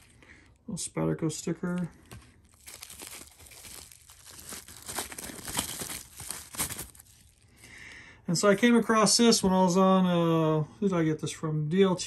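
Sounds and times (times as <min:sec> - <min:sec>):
packaging crinkling and rustling: 0:00.0 - 0:00.6, 0:01.2 - 0:07.6.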